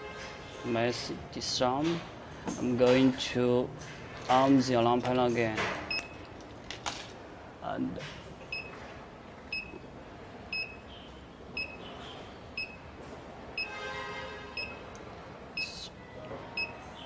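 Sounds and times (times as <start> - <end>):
alarm panel beeping: 10.5 - 10.9, 11.6 - 11.9, 14.6 - 14.8, 16.5 - 16.8.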